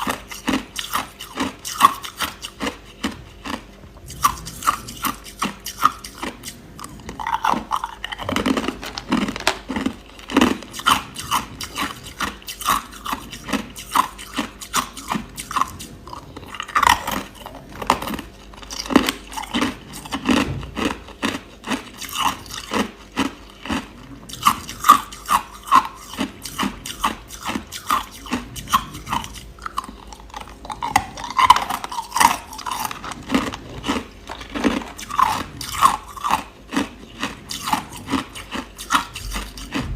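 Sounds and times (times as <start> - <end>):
crushed ice crunching in mouth: 0.0 - 39.9.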